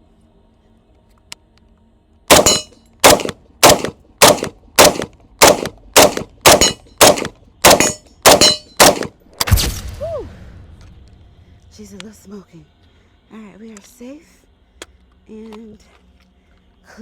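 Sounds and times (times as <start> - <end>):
rifle shots: 2.3 - 9.8.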